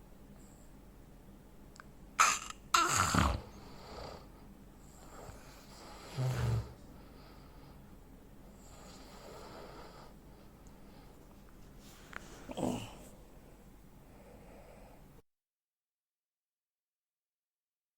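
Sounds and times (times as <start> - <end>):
man snoring: 2.8 - 4.2, 6.0 - 6.8, 12.5 - 13.0
faint breaths: 3.4 - 15.2
gasping snort: 6.1 - 6.8.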